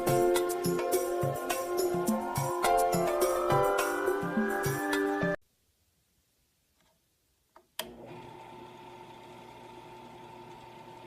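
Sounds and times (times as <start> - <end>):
drill press motor humming: 7.8 - 11.0.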